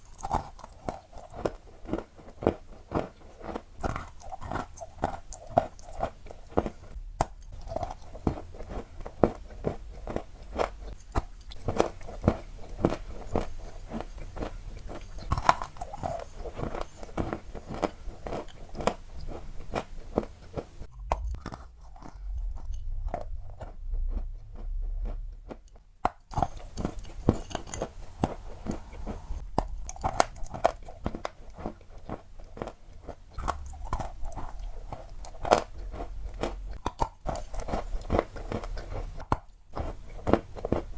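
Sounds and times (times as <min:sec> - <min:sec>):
crunchy balls crunching: 0:00.0 - 0:40.9
low rumble: 0:07.0 - 0:08.3, 0:20.9 - 0:25.6, 0:33.4 - 0:36.8.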